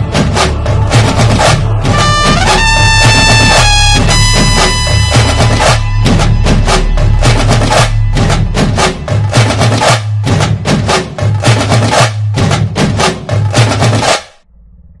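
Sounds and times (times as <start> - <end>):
heavy bass line: 0.0 - 11.5
fast busy drums: 0.0 - 14.4.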